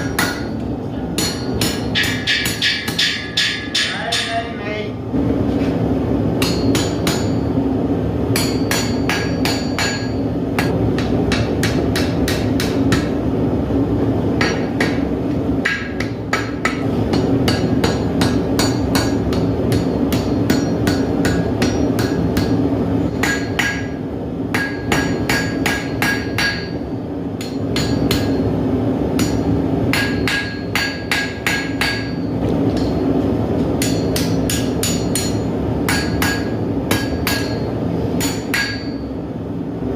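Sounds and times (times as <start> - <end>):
hammer striking steel on anvil: 0.0 - 4.6, 6.4 - 7.5, 8.3 - 13.2, 14.4 - 39.2
steady low hum: 0.0 - 39.9
anvil ringing: 1.2 - 4.5, 33.8 - 39.1.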